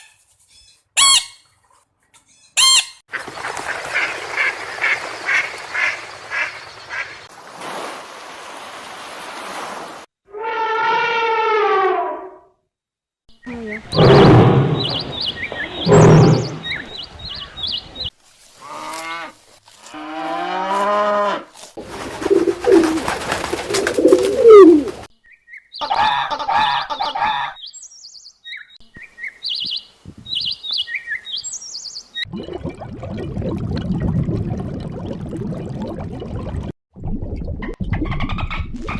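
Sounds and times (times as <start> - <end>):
pitched animal calls: 23.8 - 25.1.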